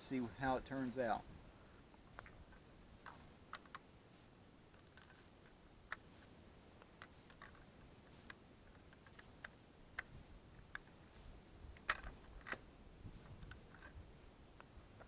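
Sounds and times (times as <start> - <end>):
rifle and cartridge clicks: 3.0 - 3.8, 11.7 - 12.7.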